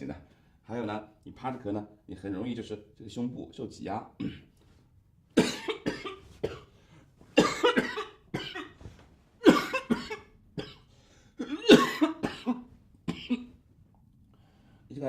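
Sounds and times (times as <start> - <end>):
man coughing: 4.2 - 4.6, 5.4 - 6.7, 7.4 - 8.8, 9.4 - 13.6.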